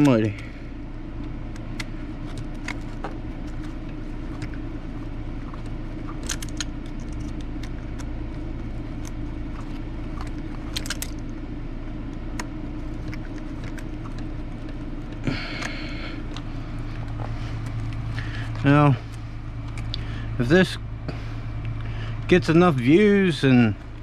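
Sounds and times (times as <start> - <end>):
low hum: 0.0 - 24.0
buzzing rattle: 5.5 - 11.5.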